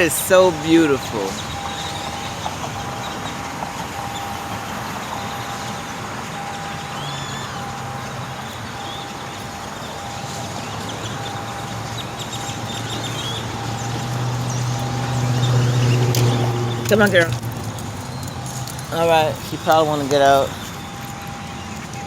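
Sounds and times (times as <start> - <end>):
birds chirping: 0.0 - 22.0
vehicle engine hum: 0.0 - 22.0.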